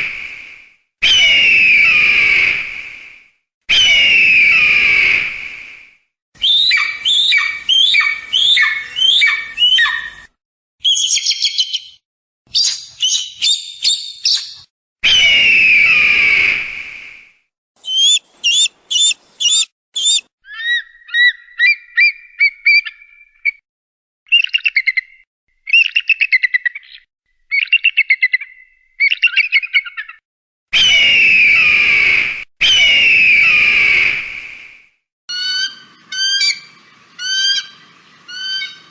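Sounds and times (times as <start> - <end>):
eagle screaming: 1.0 - 2.6, 3.7 - 5.2, 6.4 - 10.3, 17.8 - 21.3, 30.8 - 34.2
eagle whistled calls: 1.0 - 2.6, 3.7 - 5.2, 6.4 - 16.6, 17.8 - 23.6, 30.8 - 34.2, 35.3 - 38.9
eagle chattering: 17.8 - 20.2.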